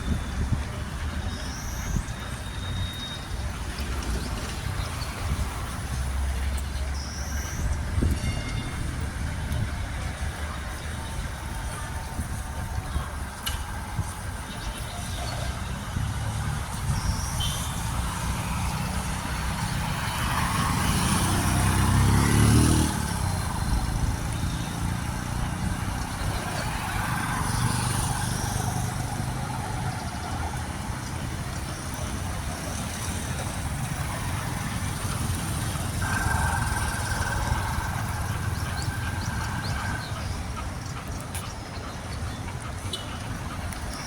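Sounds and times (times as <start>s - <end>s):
road traffic rumble: 0.0s - 44.0s
vehicle passing close: 17.8s - 41.2s.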